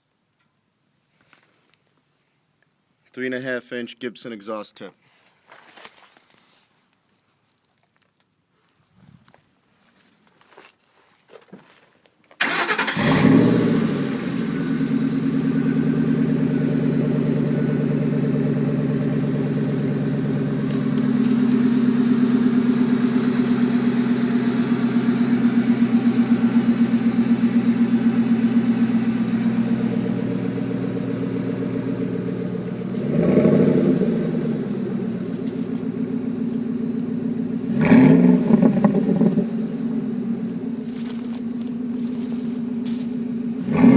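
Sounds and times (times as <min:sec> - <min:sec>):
engine revving: 0:12.4 - 0:43.9
truck engine starting and idling: 0:12.4 - 0:43.9.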